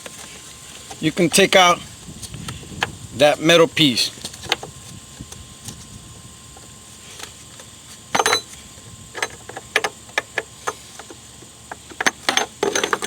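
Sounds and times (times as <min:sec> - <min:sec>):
metal clinks and knocks: 0:08.1 - 0:08.6, 0:12.0 - 0:13.0.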